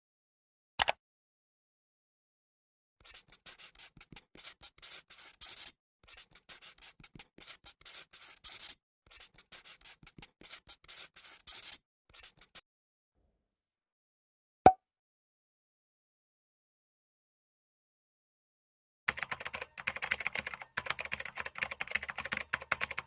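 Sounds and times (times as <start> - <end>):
pen scratching on paper: 3.0 - 12.6.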